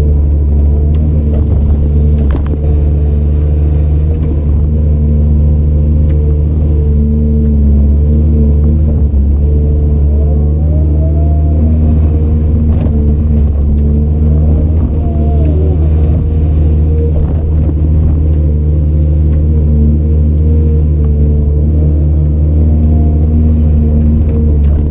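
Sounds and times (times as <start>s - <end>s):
heavy diesel engine under load: 0.0s - 24.9s
whine rising and falling in pitch: 4.2s - 24.9s.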